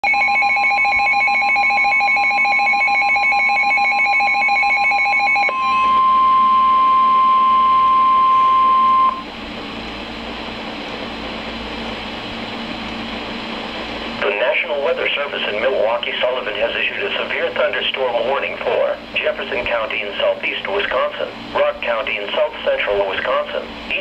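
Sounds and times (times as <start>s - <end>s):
pulsing two-tone warble: 0.0s - 9.3s
steady warning alarm tone: 0.0s - 9.3s
faint hum: 0.0s - 24.0s
radio hiss: 14.2s - 24.0s.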